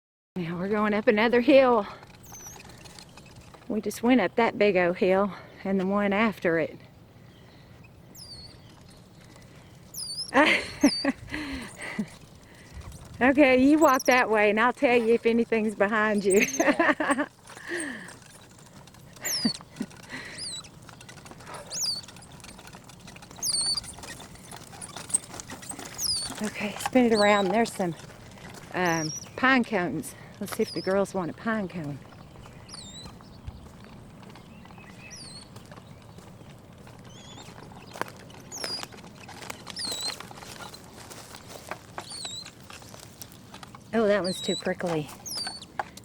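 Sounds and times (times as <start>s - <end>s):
scattered clicks and rustles: 1.1s - 4.2s, 8.6s - 46.0s
monkeys whistling chirps: 2.2s - 2.6s, 8.2s - 8.5s, 9.9s - 11.2s, 13.8s - 14.2s, 16.3s - 16.8s, 19.2s - 19.6s, 20.3s - 20.7s, 21.6s - 22.2s, 23.4s - 24.0s, 24.8s - 26.4s, 32.7s - 33.1s, 39.8s - 40.2s, 42.0s - 42.4s, 45.2s - 45.6s
baby monkey squeaking: 2.2s - 2.8s, 8.1s - 8.5s, 9.9s - 11.8s, 12.8s - 18.5s, 19.1s - 20.7s, 21.6s - 22.5s, 23.4s - 27.6s, 28.9s - 29.3s, 30.6s - 30.9s, 32.7s - 33.1s, 38.5s - 38.8s, 39.8s - 40.2s, 42.0s - 42.5s, 44.2s - 45.8s.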